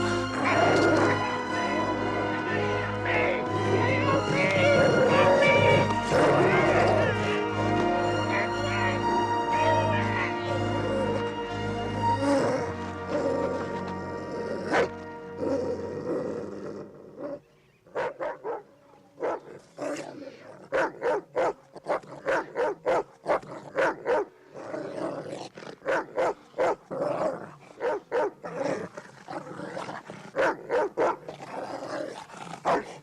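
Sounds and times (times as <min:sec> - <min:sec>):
dog barking aggressively: 0:18.0 - 0:18.6, 0:19.2 - 0:19.5, 0:20.7 - 0:24.3, 0:25.8 - 0:26.8, 0:27.8 - 0:28.6, 0:30.4 - 0:31.4, 0:32.6 - 0:33.0.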